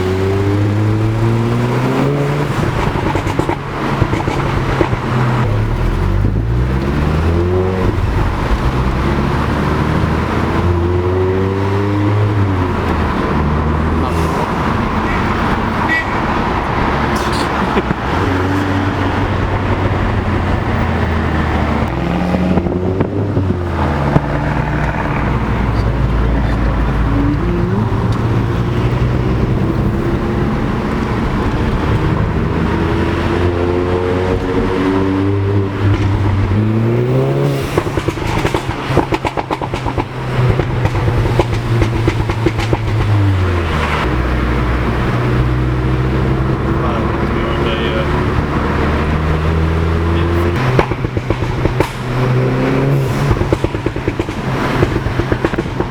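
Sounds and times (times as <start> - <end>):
car engine accelerating through gears: 0.0 - 55.9
exhaust crackling pops: 37.5 - 44.1, 50.4 - 55.9.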